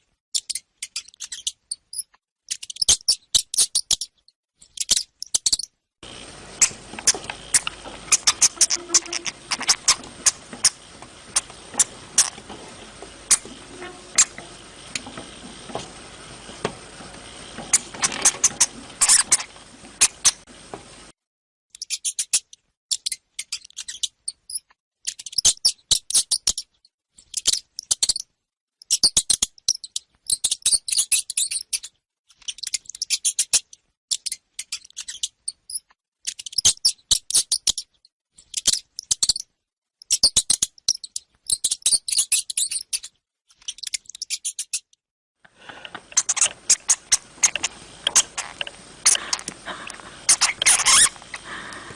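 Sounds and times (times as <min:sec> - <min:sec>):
hamster squeaking: 0:00.4 - 0:05.7, 0:06.5 - 0:15.9, 0:17.6 - 0:20.5, 0:21.8 - 0:26.7, 0:27.3 - 0:39.5, 0:40.1 - 0:44.9, 0:46.0 - 0:49.5, 0:50.2 - 0:51.4
steady hiss: 0:06.0 - 0:21.1, 0:45.5 - 0:51.9.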